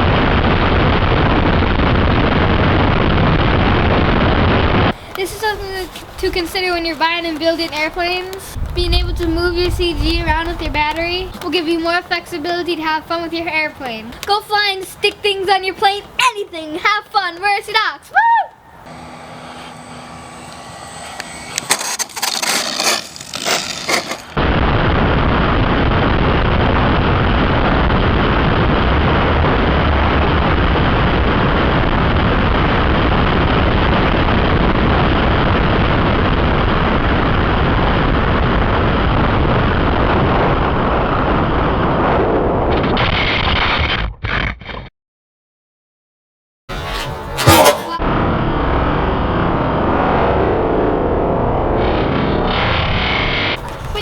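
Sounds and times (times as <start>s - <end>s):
wind rushing on microphone: 0.0s - 13.0s.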